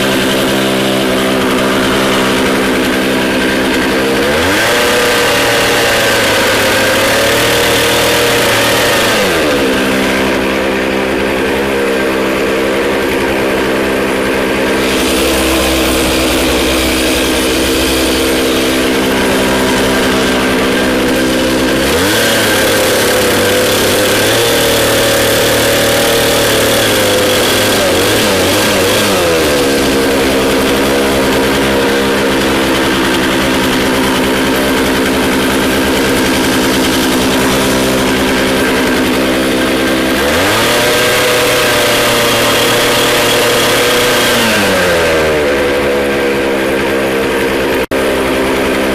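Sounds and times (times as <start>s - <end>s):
small gasoline engine revving: 0.0s - 48.9s.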